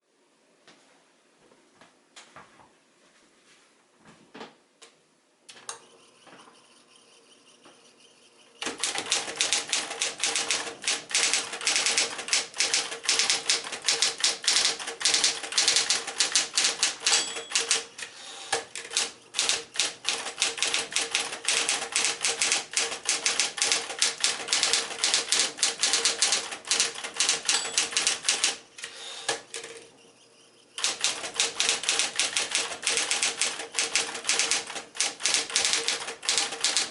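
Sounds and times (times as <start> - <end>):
typewriter motor hum: 8.1 - 29.9, 30.6 - 36.9
typewriter keystrikes: 8.6 - 29.8, 30.8 - 36.9.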